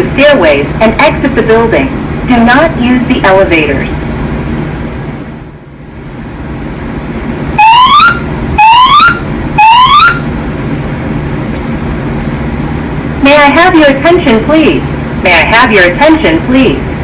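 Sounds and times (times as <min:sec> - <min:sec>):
steady low hum: 0:00.0 - 0:17.0
fire alarm whoop tones: 0:07.6 - 0:10.3.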